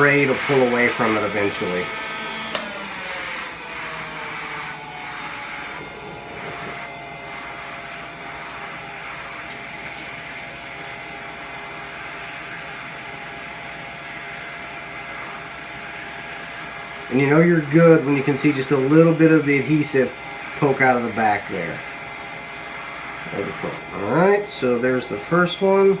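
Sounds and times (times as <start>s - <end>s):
heat gun blowing with whine: 0.0s - 26.0s.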